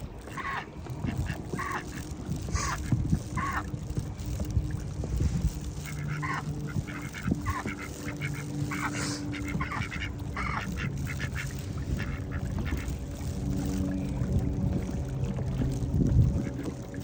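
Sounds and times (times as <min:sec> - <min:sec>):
low steady hum: 0:00.0 - 0:17.0
ducks quacking: 0:00.3 - 0:03.7, 0:05.8 - 0:13.0.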